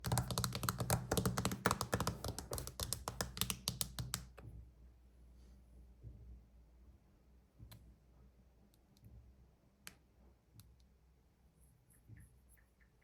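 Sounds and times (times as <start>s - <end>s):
rapid tapping and clicking: 0.0s - 4.4s.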